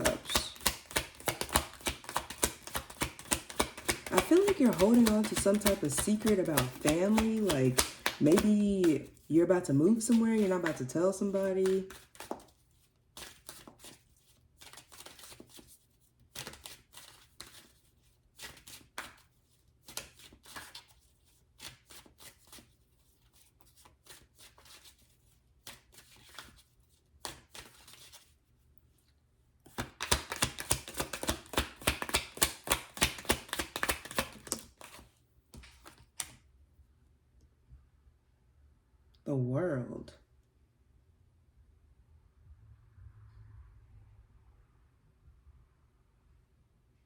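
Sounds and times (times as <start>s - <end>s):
rapid card flicks: 0.0s - 9.1s, 29.7s - 35.0s
cards rustling and tapping: 0.0s - 28.4s, 29.6s - 36.4s.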